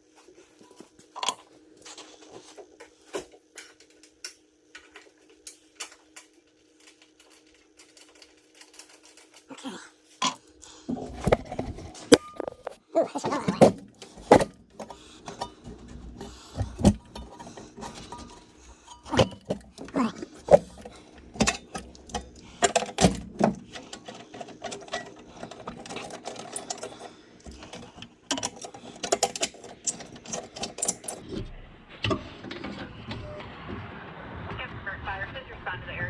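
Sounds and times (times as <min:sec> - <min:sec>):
metal parts and tools clinking: 0:00.6 - 0:02.1, 0:04.8 - 0:09.6, 0:10.2 - 0:31.3.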